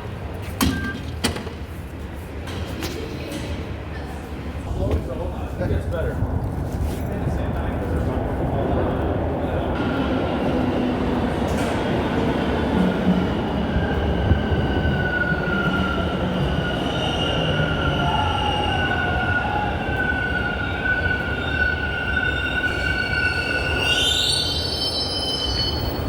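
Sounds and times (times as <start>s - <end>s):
subway train rumble: 0.0s - 26.0s
wheels squealing on rails: 11.5s - 26.0s.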